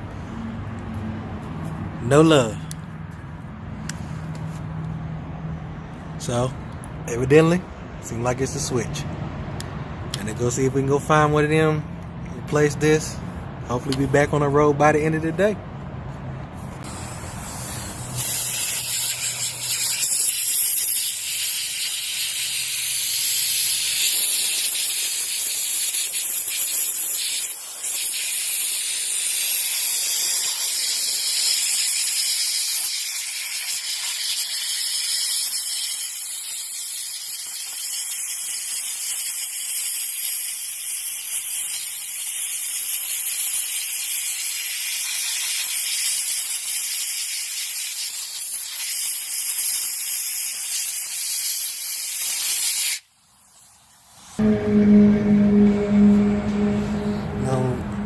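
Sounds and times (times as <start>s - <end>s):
aerosol spray can hissing: 16.9s - 53.0s.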